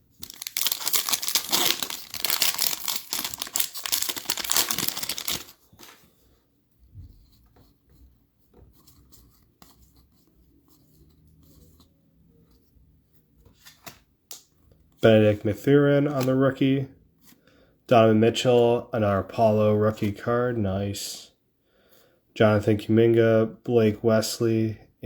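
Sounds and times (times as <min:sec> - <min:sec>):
cards rustling and clicking: 0:00.1 - 0:06.1
foil pack tearing and crinkling: 0:00.2 - 0:06.0.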